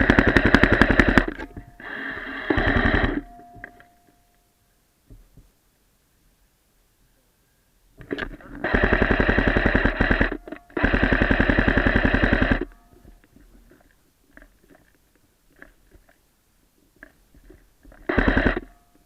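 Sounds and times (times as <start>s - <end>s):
airsoft gun firing bursts: 0.0s - 3.4s, 8.1s - 12.8s, 18.0s - 18.8s.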